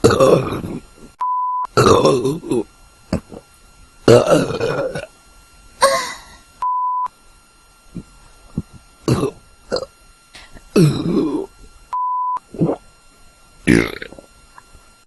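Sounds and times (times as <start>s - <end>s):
gulps: 0.0s - 1.1s, 1.7s - 3.5s, 4.1s - 5.1s, 7.9s - 9.9s, 10.7s - 11.5s, 12.4s - 12.9s
person burping: 0.0s - 1.1s, 1.7s - 3.4s, 4.1s - 5.1s, 9.1s - 9.9s, 10.7s - 11.5s, 12.5s - 12.9s, 13.6s - 14.3s
steady beep tone: 1.2s - 1.8s, 6.6s - 7.1s, 11.9s - 12.4s.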